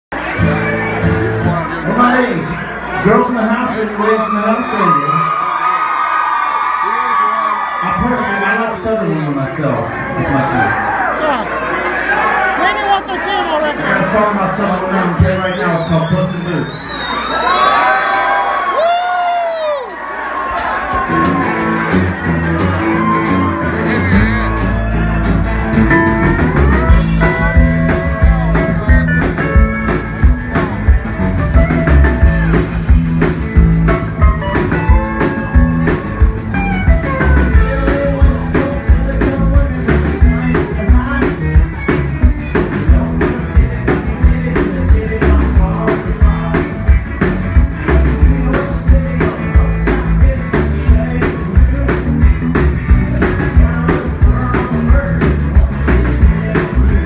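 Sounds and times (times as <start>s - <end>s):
drum kit beat: 20.8s - 57.0s.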